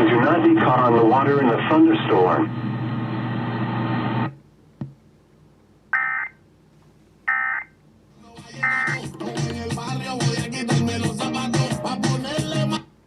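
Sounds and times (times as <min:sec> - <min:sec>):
guitar music: 0:08.5 - 0:12.0.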